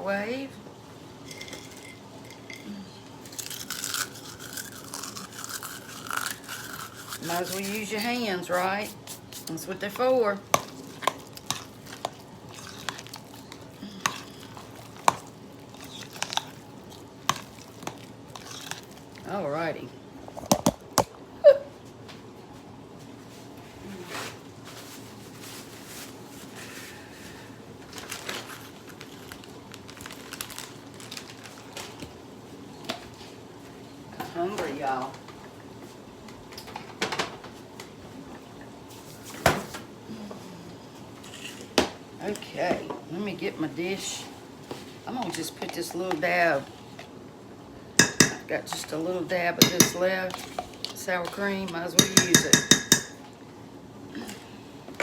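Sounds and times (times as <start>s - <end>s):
dishes and utensils clinking: 1.2s - 2.7s, 48.0s - 48.5s, 52.0s - 53.2s
food mixture stirring and squishing: 3.2s - 19.4s, 43.9s - 47.2s, 48.0s - 53.3s
clicks and knocks against bowl: 48.0s - 48.4s, 49.6s - 50.7s, 52.0s - 53.2s.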